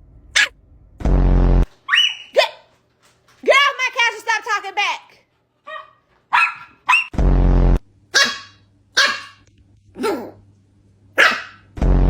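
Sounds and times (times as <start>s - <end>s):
puppy barking and yipping: 1.8s - 2.7s, 5.6s - 7.2s, 8.2s - 9.4s, 11.2s - 11.7s.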